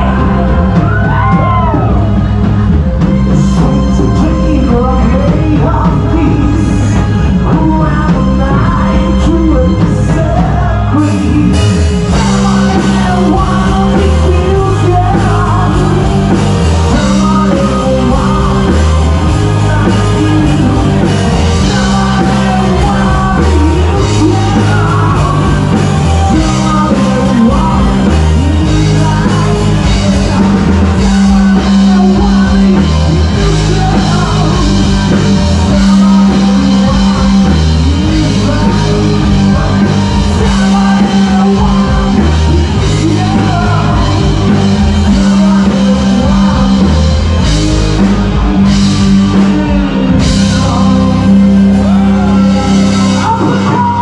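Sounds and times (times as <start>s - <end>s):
person singing: 0.0s - 54.0s
rock band playing: 0.0s - 54.0s.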